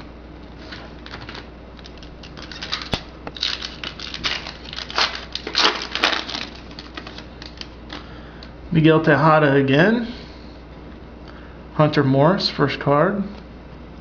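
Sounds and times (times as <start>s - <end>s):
foil wrapper tearing and crinkling: 1.0s - 8.1s.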